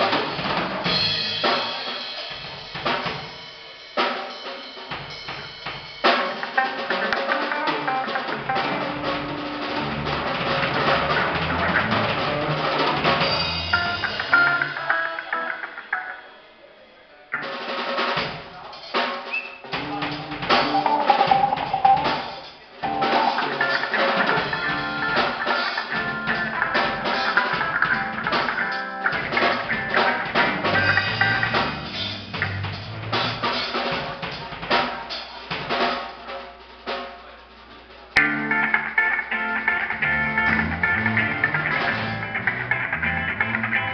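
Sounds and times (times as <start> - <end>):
drum kit playing: 0.0 - 16.4, 17.4 - 43.9
pitched instrument notes: 19.8 - 28.4.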